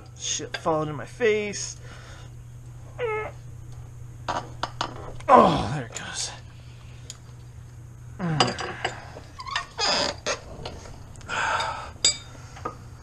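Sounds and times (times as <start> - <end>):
man grunting and groaning: 5.3 - 5.8, 8.2 - 8.9.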